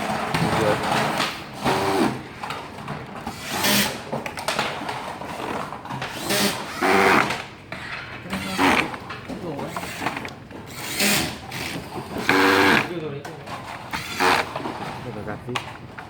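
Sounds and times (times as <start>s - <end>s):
electric screwdriver bursts: 3.4s - 4.0s, 6.1s - 7.4s, 9.7s - 12.9s, 14.0s - 14.6s.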